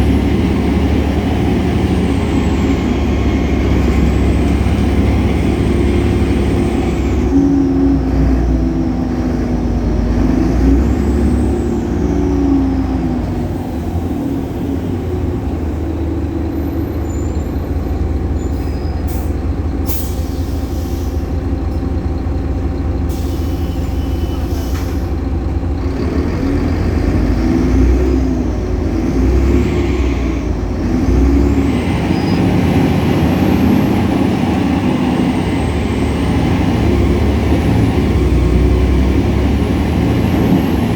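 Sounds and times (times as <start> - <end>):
bus diesel engine: 0.0 - 40.9
engine belt whine: 0.0 - 40.9
air hiss: 23.1 - 25.1.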